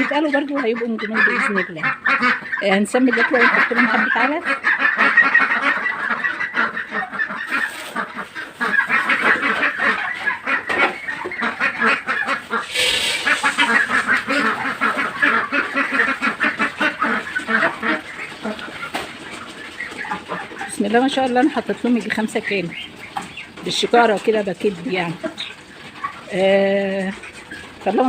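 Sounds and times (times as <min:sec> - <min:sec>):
ducks calling: 0:00.0 - 0:28.0
rushing rustle: 0:07.5 - 0:09.4, 0:12.5 - 0:19.4.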